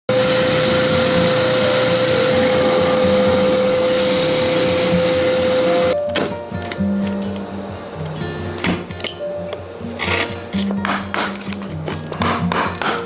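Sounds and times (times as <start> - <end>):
woodworking machine whining: 0.1 - 6.0
faint high whistle: 2.4 - 6.0.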